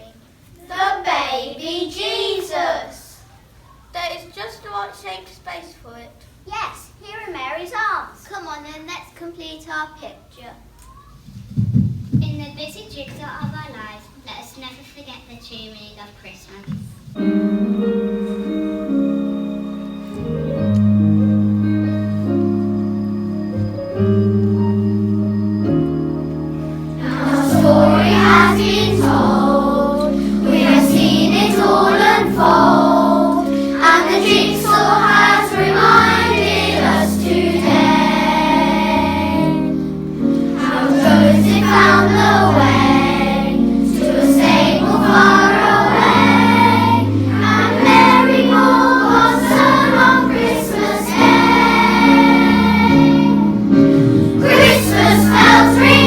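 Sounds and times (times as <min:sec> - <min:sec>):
children's choir singing: 0:00.6 - 0:03.2, 0:17.2 - 0:25.0, 0:25.6 - 0:56.0
instrumental accompaniment: 0:17.1 - 0:56.0.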